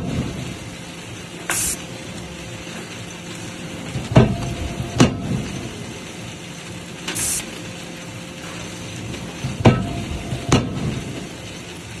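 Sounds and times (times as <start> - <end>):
steady hiss and hum: 0.0 - 12.0
short hiss: 1.5 - 1.8, 7.2 - 7.5.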